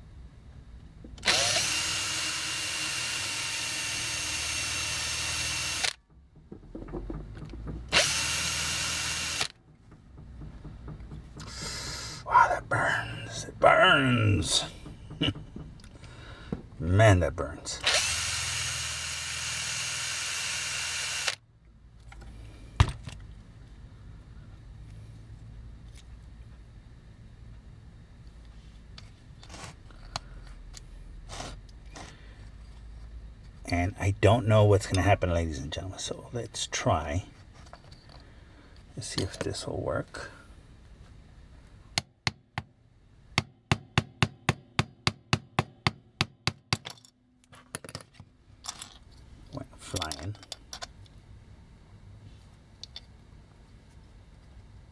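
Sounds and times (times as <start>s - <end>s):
electric drill boring metal: 1.2s - 6.0s, 7.9s - 9.6s, 17.8s - 21.4s
small hammer tapping on metal: 9.1s - 12.1s, 14.7s - 16.7s.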